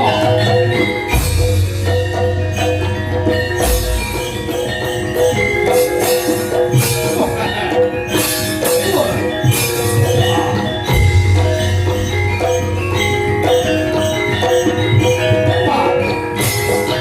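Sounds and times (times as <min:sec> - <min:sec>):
drum strokes: 0:00.0 - 0:17.0
gamelan bronze metallophones: 0:00.0 - 0:17.0.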